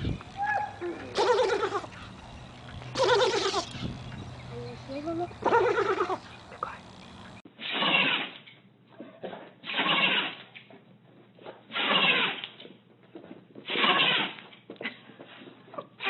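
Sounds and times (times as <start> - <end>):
animal sneezing: 3.0 - 3.8, 7.6 - 8.3, 9.2 - 10.4, 11.7 - 12.4, 13.7 - 14.4.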